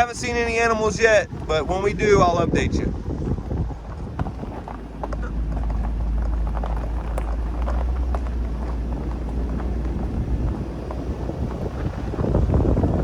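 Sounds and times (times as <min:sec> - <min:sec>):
road rumble of car driving: 0:00.0 - 0:13.0.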